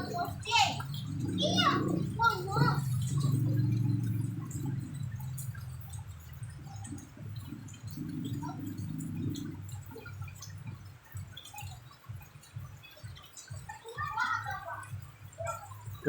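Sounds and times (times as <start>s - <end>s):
low rumble: 0.0s - 11.3s
water splashing and dripping: 0.0s - 16.0s.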